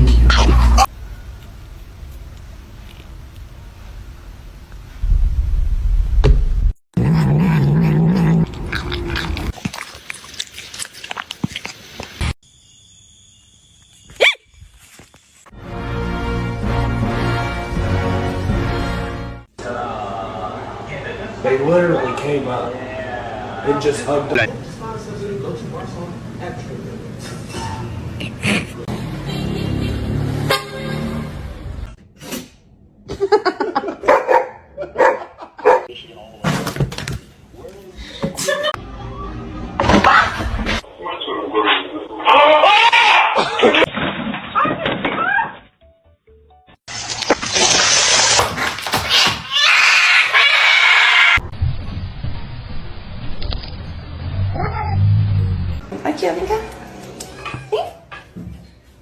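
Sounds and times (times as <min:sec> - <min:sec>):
steady low sound: 0:04.8 - 0:06.8
crunching chewing clicks: 0:08.4 - 0:12.3
dog barking: 0:34.0 - 0:35.9.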